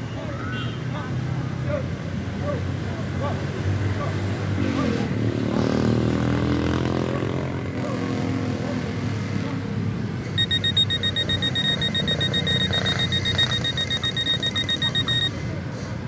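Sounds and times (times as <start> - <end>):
rapid high electronic beeping: 10.4 - 15.4.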